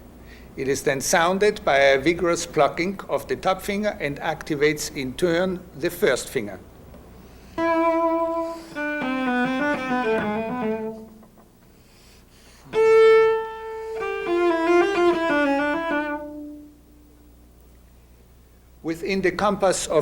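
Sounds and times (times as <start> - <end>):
cello notes with plucked string: 7.6 - 11.2, 12.7 - 16.7.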